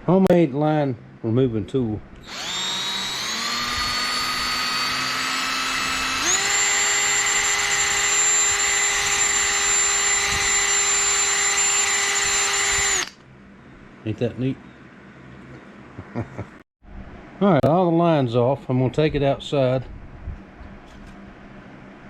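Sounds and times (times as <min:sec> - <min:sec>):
motor whining: 0:02.2 - 0:13.2.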